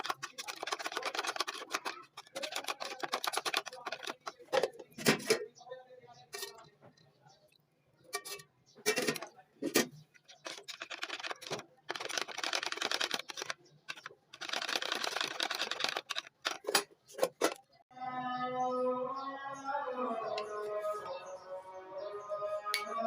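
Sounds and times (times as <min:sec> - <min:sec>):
utensil scraping a bowl: 0:00.0 - 0:05.3.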